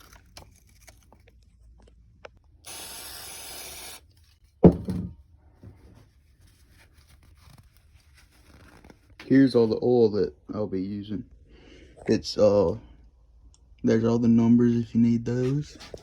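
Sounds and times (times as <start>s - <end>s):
sharp thump: 4.6s - 5.1s.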